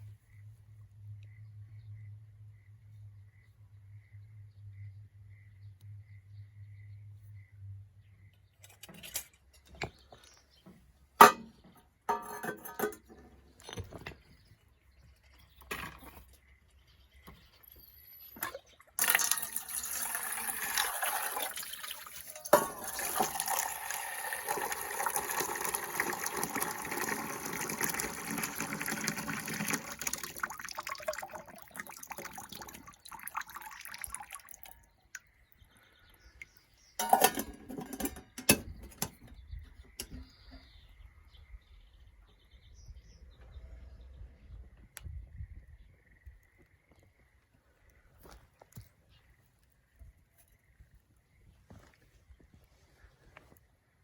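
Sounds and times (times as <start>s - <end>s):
water pouring into a pot: 18.4s - 34.8s.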